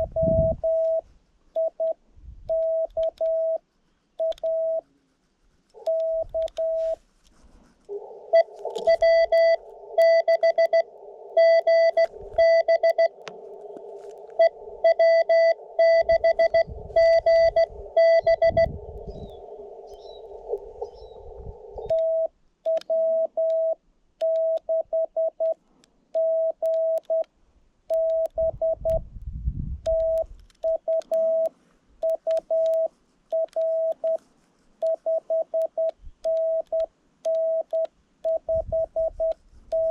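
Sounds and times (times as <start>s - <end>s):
morse code tone: 0.0s - 1.0s, 1.6s - 3.6s, 4.2s - 4.8s, 5.8s - 7.0s, 7.9s - 13.2s, 14.3s - 20.6s, 21.8s - 25.6s, 26.2s - 27.3s, 27.9s - 29.0s, 29.9s - 34.2s, 34.8s - 39.9s
low rumbles: 7.8s - 22.3s
receiver hiss: 7.8s - 23.4s.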